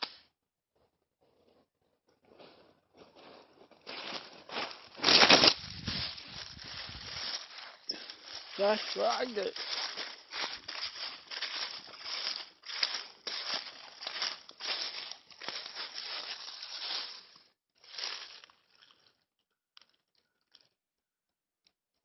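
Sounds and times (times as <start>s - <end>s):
crunching and rustling: 2.9s - 19.2s.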